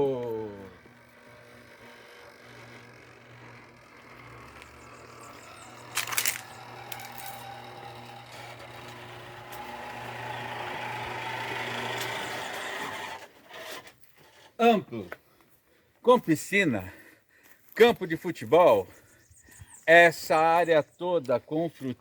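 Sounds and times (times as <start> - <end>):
electric gate motor running: 0.0 - 13.4
gate rolling noise: 1.3 - 13.2.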